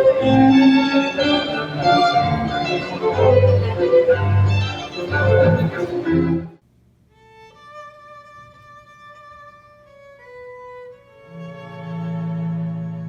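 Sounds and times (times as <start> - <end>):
cello playing: 0.0 - 6.6, 9.6 - 13.0
violin playing: 0.0 - 6.6, 7.2 - 13.0.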